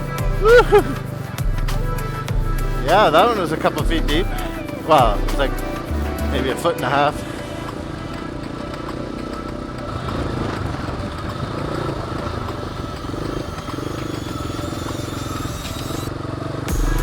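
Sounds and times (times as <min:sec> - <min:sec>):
dirt bike engine running: 0:00.0 - 0:17.0.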